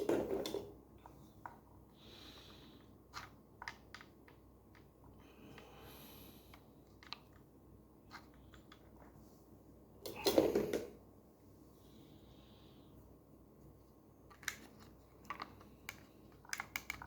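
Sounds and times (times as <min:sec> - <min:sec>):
small plastic clicks: 0:14.3 - 0:17.0.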